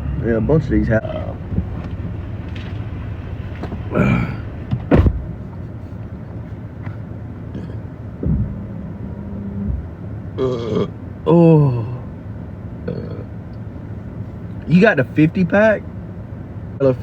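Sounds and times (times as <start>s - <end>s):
vehicle engine drone: 0.0s - 17.0s.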